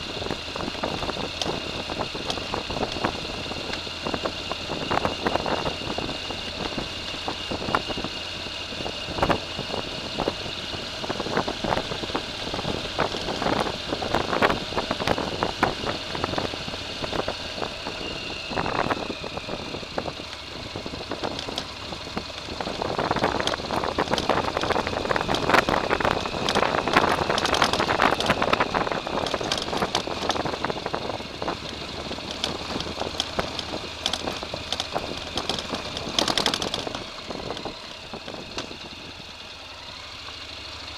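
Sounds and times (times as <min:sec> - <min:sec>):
small vehicle motor whining: 0:00.0 - 0:40.9
knocks and rattles: 0:23.1 - 0:28.6, 0:29.2 - 0:30.6, 0:32.2 - 0:37.7.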